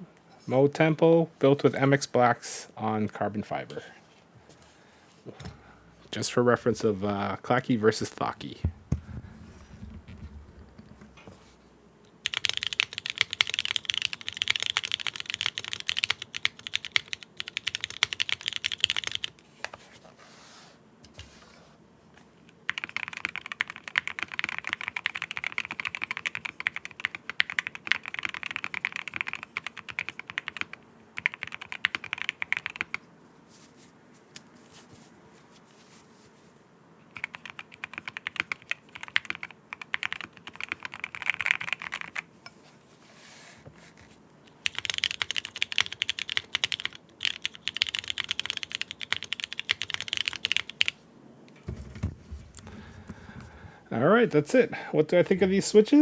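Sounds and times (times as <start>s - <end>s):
fast typing on mechanical keyboard: 12.2s - 19.3s, 22.7s - 33.0s, 37.2s - 42.3s, 44.6s - 51.0s.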